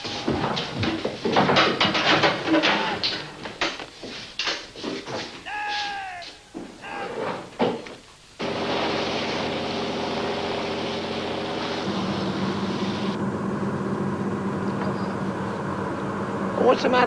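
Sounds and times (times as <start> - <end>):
motor boat engine running: 8.4 - 17.0.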